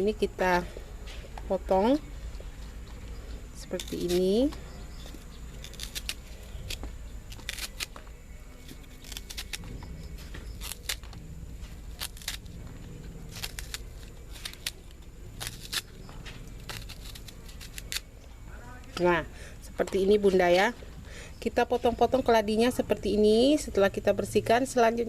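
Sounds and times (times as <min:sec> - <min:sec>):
stalks being cut with snaps: 0:03.6 - 0:18.1.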